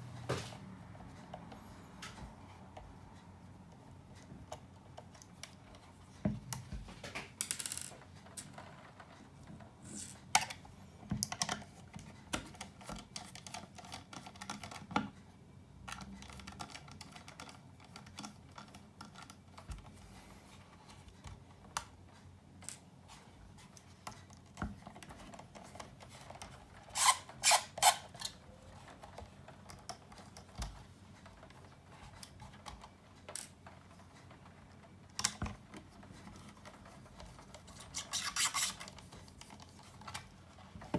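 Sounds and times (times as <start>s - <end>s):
clicks and scrapes of parts handled: 22.6s - 40.9s.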